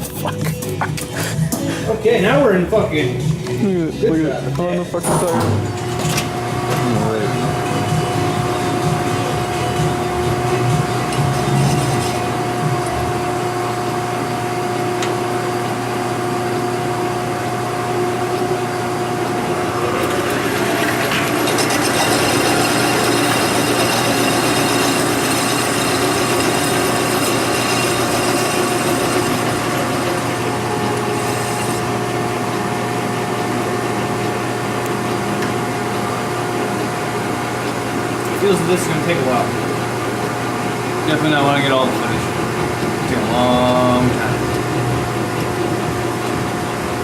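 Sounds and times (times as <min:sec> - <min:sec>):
metal lathe motor hum: 0:04.2 - 0:47.0
scraping cutting noise: 0:10.6 - 0:12.7, 0:19.7 - 0:32.0.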